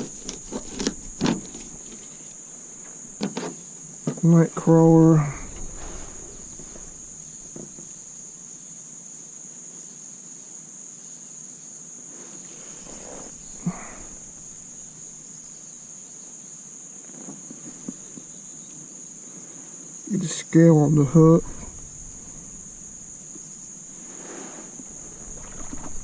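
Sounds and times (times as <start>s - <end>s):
insects droning: 0.0s - 26.0s.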